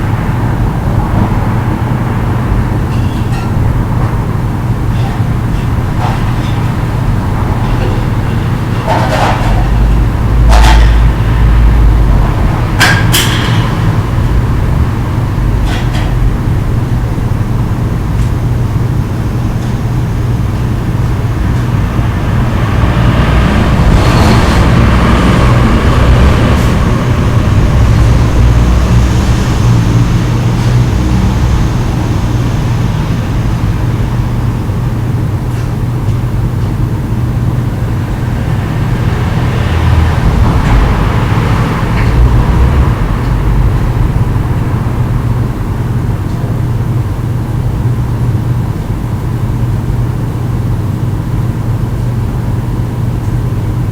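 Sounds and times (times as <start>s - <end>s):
rush of noise: 0.0s - 35.2s, 37.5s - 48.5s
water heater humming: 0.0s - 53.9s.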